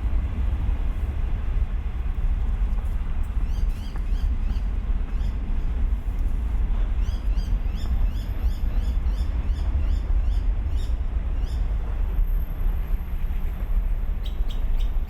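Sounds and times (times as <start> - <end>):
steady low rumble: 0.0 - 15.0
bird chirping: 14.2 - 15.0.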